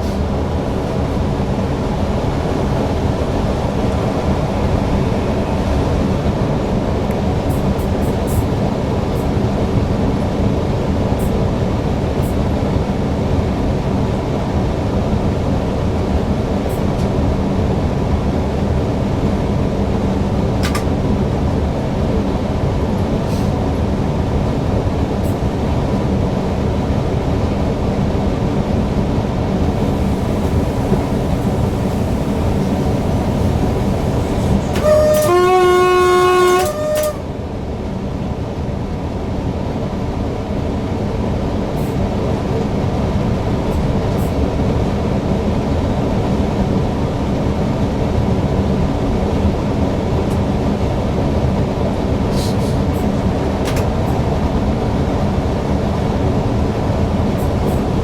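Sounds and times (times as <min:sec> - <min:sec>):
train running on rails: 0:00.0 - 0:58.0
three-note train horn: 0:29.8 - 0:37.5.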